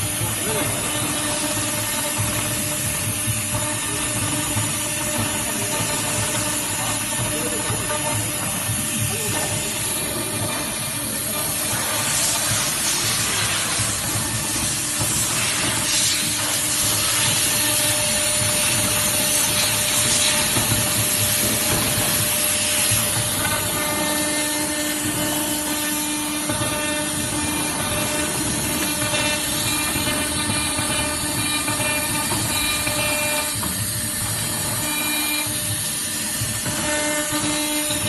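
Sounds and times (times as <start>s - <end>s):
cnc router machining metal: 0.0s - 38.0s.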